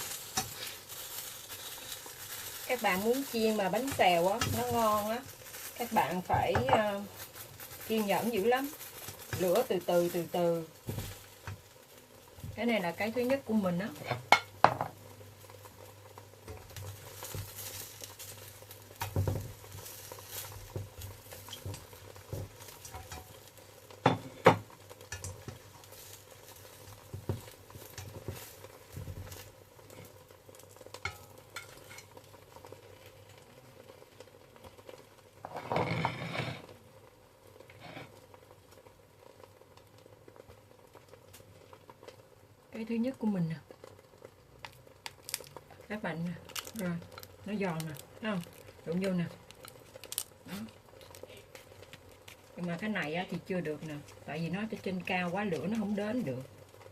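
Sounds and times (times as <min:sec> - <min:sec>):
batter sizzling in pans: 0:00.0 - 0:56.9.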